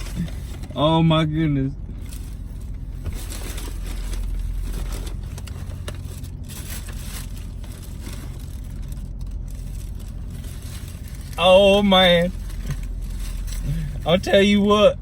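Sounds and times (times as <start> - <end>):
car engine hum: 0.0 - 15.0
paper bag rustling: 2.0 - 14.0.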